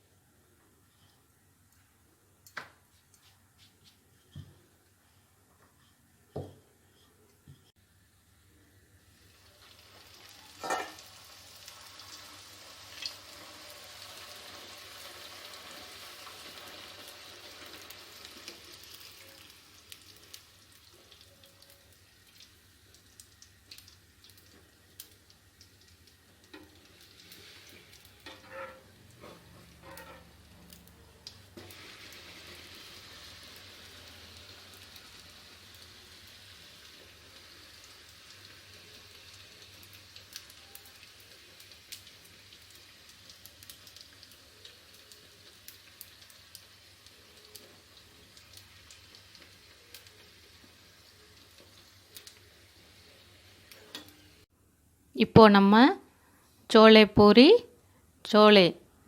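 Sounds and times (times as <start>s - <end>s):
dough sizzling in hot oil: 8.9s - 54.6s.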